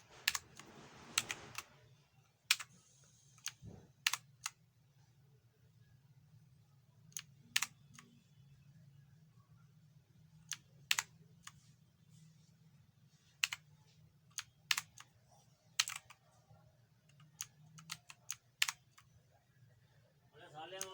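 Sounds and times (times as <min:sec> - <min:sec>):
faint low hum: 0:00.0 - 0:20.9
mechanical keyboard key clicks: 0:02.5 - 0:02.7, 0:03.4 - 0:04.6, 0:10.5 - 0:11.1, 0:14.4 - 0:15.0, 0:15.8 - 0:16.2, 0:17.1 - 0:19.1.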